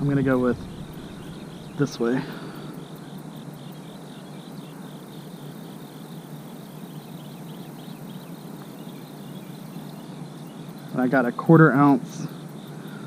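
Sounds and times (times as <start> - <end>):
insects chirping: 0.0 - 13.0
outdoor hiss: 0.0 - 13.0.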